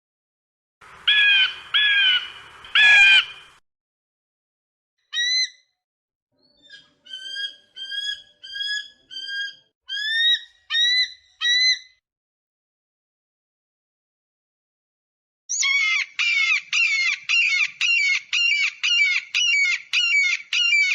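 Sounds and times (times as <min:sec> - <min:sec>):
eagle calls: 0:01.0 - 0:03.6, 0:15.5 - 0:20.9.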